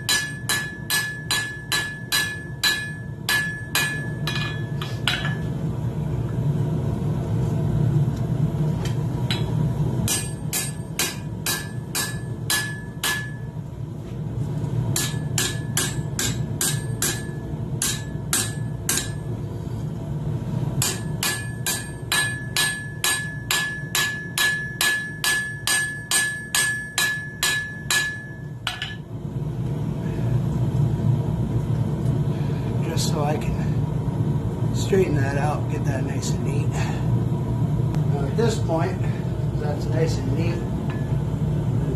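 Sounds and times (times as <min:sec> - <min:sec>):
hammer striking steel on anvil: 0:00.0 - 0:05.5, 0:09.3 - 0:13.5, 0:14.9 - 0:19.3, 0:20.8 - 0:29.1.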